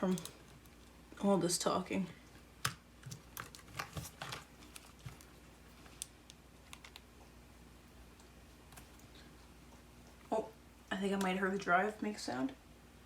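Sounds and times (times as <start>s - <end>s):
faint low hum: 0.0s - 13.0s.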